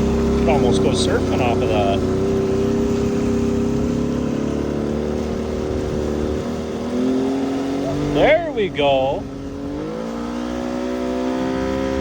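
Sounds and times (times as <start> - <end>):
outboard motor running hard: 0.0 - 12.0
water rushing: 7.2 - 9.5.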